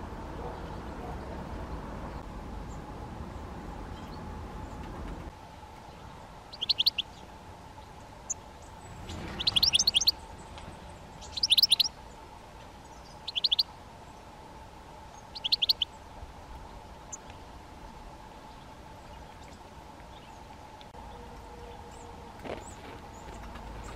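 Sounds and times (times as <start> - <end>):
bird chipping calls: 6.5 - 7.2, 8.9 - 12.0, 13.0 - 13.7, 15.2 - 16.0.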